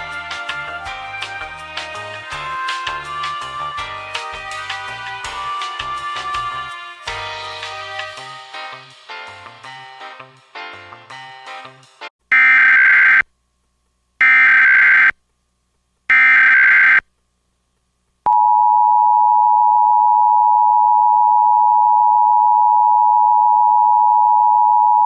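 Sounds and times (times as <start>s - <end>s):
background music: 0.0s - 12.1s.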